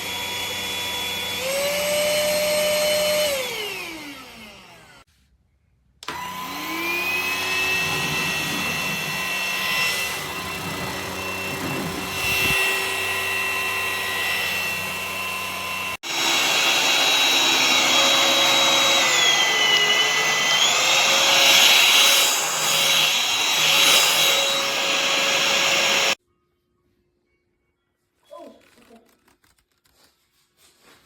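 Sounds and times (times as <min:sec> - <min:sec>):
vacuum cleaner motor whine: 0:00.0 - 0:05.1, 0:06.0 - 0:26.2.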